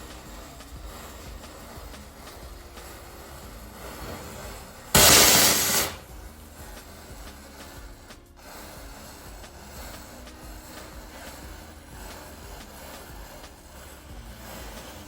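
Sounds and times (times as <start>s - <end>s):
faint background music: 0.0s - 15.0s
firecracker bang: 3.8s - 6.3s.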